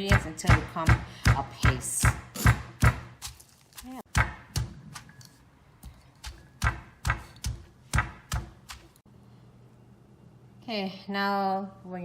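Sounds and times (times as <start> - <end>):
pestle pounding in a mortar: 0.0 - 5.2, 5.8 - 9.0.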